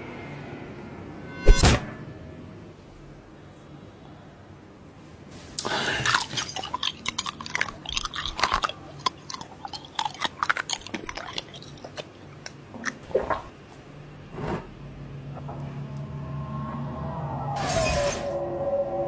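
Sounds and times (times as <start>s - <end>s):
person chewing crunchy food: 5.6s - 13.5s.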